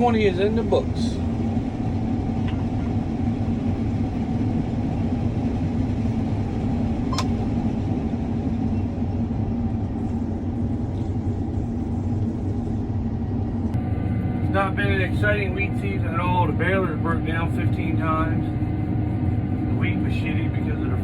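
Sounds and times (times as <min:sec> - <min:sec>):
combine harvester engine drone: 0:00.0 - 0:21.0.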